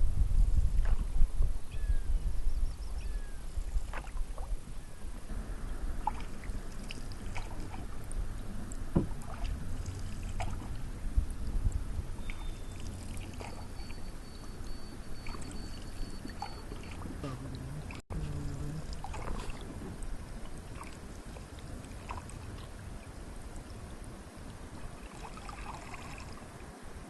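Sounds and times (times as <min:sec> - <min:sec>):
low rumble: 0:00.0 - 0:03.8, 0:04.5 - 0:13.2
paddle splashing water: 0:00.7 - 0:01.2, 0:03.5 - 0:27.0.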